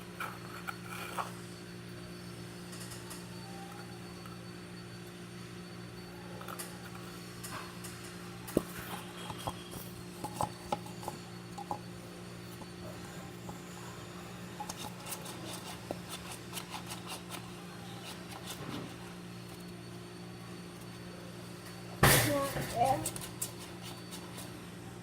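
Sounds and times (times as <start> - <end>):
steady low hum: 0.0 - 25.0
containers and utensil tapping and scraping: 8.5 - 19.7, 22.1 - 24.6.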